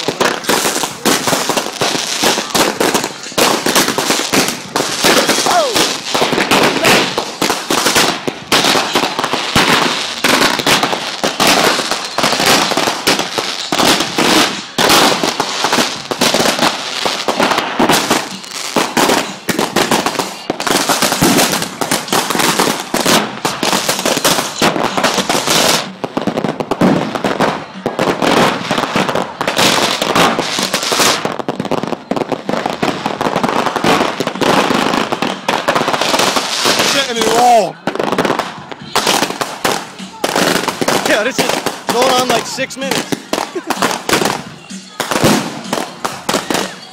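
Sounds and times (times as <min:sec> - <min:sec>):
fireworks bangs and crackles: 0:00.0 - 0:46.9.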